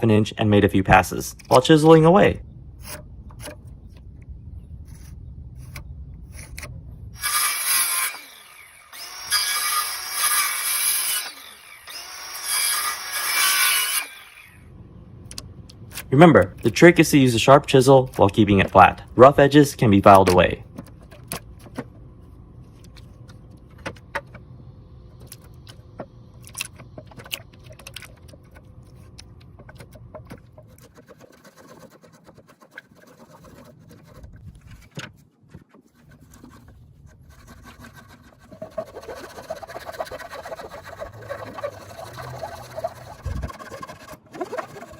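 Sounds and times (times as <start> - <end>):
sharp clicks and knocks: 22.8 - 24.5, 25.2 - 33.0
file scraping wood: 28.2 - 34.9, 35.5 - 44.9.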